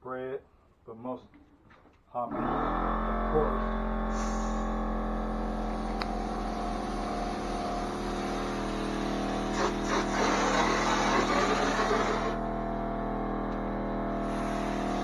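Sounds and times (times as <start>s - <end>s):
air compressor humming: 2.3s - 15.0s
spray gun hissing: 4.1s - 4.7s, 9.4s - 12.4s.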